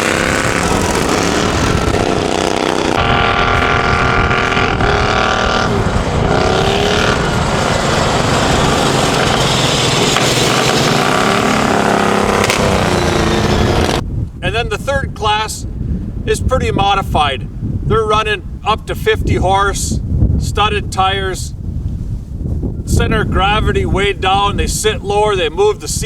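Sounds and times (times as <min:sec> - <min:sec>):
lawnmower engines racing: 0:00.0 - 0:14.0.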